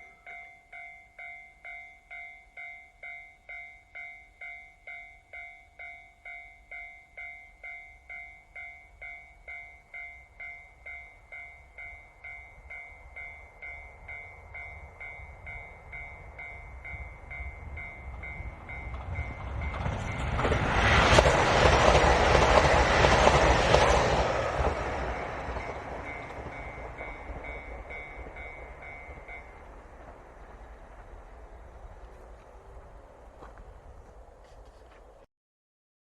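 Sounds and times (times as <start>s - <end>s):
level-crossing bell dinging: 0.0s - 20.4s, 24.9s - 30.0s
diesel train passing: 0.0s - 35.2s
wheels clacking over rail joints: 15.5s - 35.2s.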